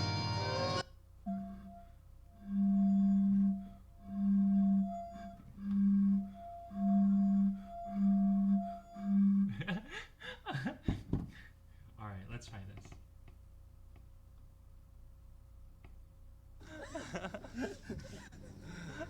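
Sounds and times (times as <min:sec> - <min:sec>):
faint steady higher tone: 0:00.0 - 0:09.6
pulsing low humming tone: 0:00.0 - 0:09.8.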